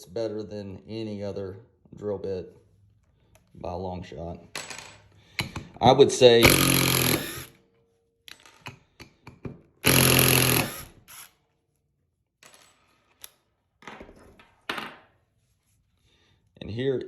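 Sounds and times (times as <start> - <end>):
impact driver spinning: 6.4 - 7.6, 9.8 - 11.4.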